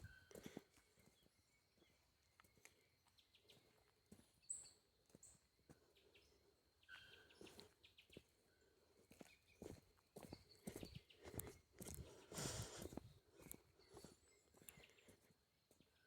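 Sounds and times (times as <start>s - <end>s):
quiet outdoor background noise: 0.0s - 16.0s
faint bird calls: 6.8s - 8.1s.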